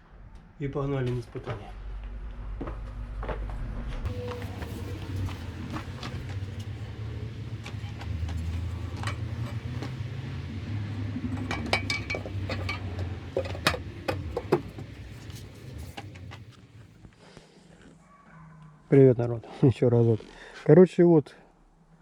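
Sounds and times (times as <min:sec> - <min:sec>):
sharp metallic clinks and knocks: 0:04.1 - 0:16.5
steady low hum: 0:04.1 - 0:17.0.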